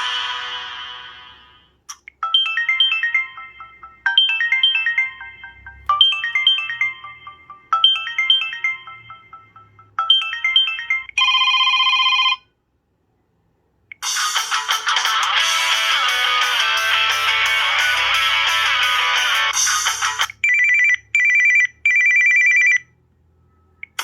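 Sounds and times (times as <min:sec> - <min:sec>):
ringtone melody of high notes: 0:02.2 - 0:12.3, 0:14.0 - 0:21.4
strummed guitar: 0:14.1 - 0:19.7.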